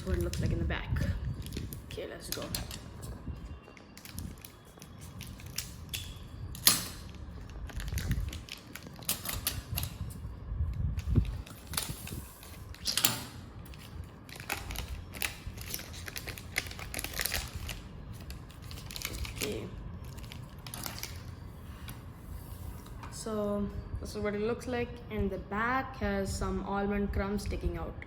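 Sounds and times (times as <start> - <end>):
wrapper clicking and rustling: 1.2 - 10.2, 11.0 - 21.4.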